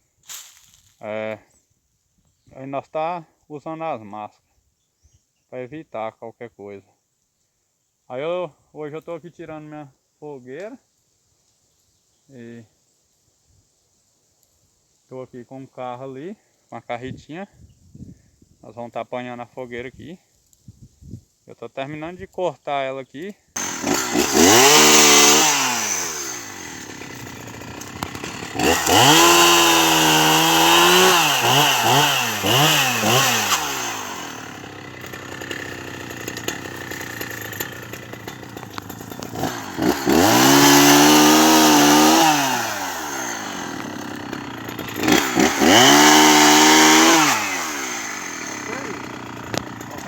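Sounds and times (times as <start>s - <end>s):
chainsaw cutting logs: 23.6s - 50.0s
chainsaw revving and idling: 23.6s - 50.0s.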